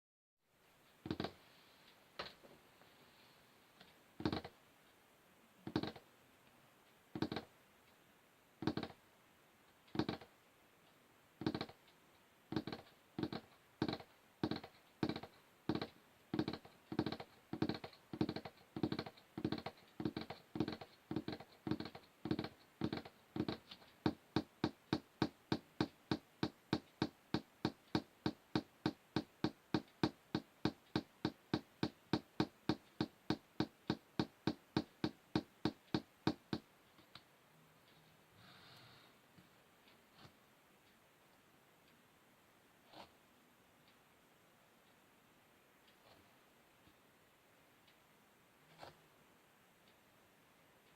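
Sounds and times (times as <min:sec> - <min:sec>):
fingers tapping on wood: 0:01.1 - 0:01.4, 0:04.2 - 0:04.6, 0:05.7 - 0:06.0, 0:07.2 - 0:07.5, 0:08.6 - 0:09.0, 0:09.9 - 0:10.3, 0:11.4 - 0:11.8, 0:12.5 - 0:36.7.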